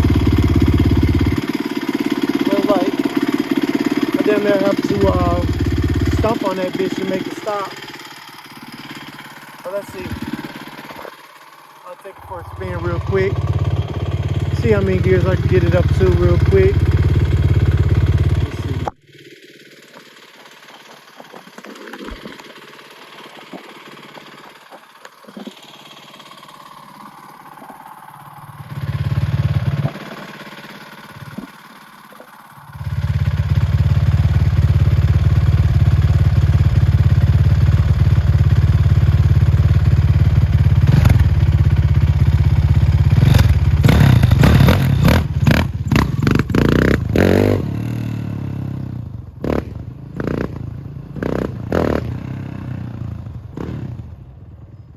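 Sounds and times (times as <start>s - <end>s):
quad bike engine revving: 0.0s - 54.6s.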